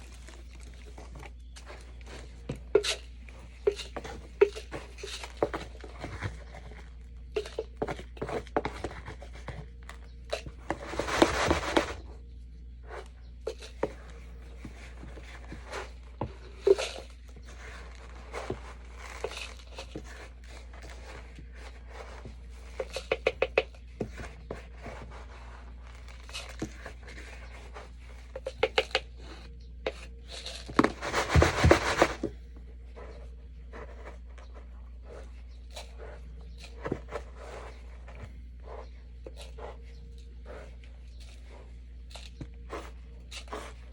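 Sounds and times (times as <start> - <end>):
scoop scraping through litter: 0.0 - 12.1, 12.9 - 43.9.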